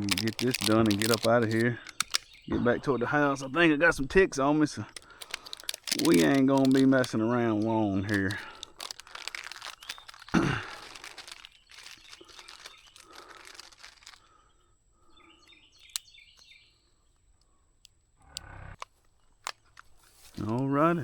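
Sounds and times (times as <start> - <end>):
scattered clicks: 0.0 - 2.4, 4.9 - 9.2
rustling handling noise: 0.0 - 2.5, 4.8 - 14.4, 18.8 - 21.0.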